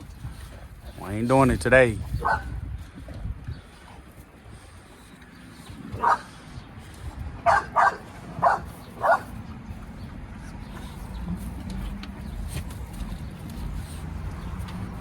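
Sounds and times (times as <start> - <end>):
dog barking: 2.2 - 2.5, 6.0 - 6.3, 7.4 - 9.4.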